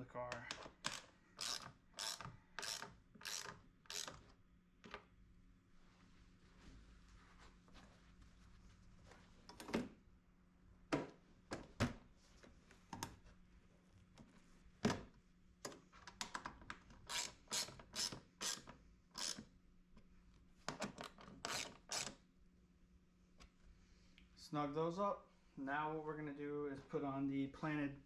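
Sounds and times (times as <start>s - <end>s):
ratchet wrench clicking: 0.9s - 4.1s, 19.2s - 19.4s.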